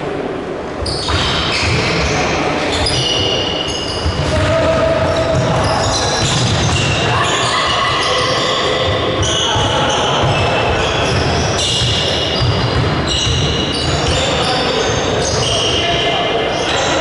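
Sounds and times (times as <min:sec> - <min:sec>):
spectators' voices echoing: 0:00.0 - 0:17.0
sneakers squeaking on floor: 0:00.8 - 0:17.0
basketball bouncing: 0:03.9 - 0:07.3, 0:08.3 - 0:14.5.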